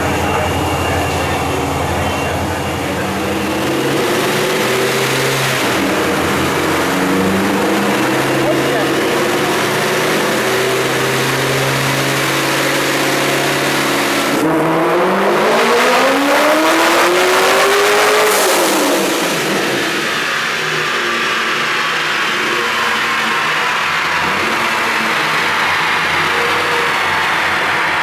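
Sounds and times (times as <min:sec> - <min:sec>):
car engine revving on a dyno: 0:00.0 - 0:28.0.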